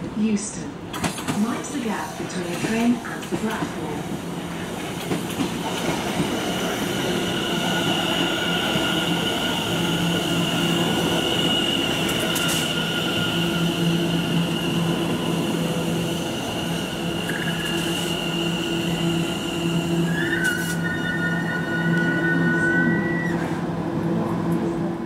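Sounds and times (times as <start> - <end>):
wheels rumbling on rail: 0.9 - 25.0
electric train whine: 1.4 - 25.0.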